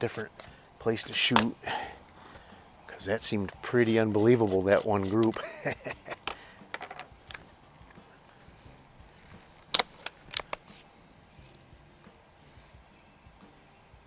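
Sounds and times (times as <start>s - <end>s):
air rifle clacks: 0.0s - 2.7s, 3.5s - 10.8s
air rifle light clicks: 9.7s - 10.6s.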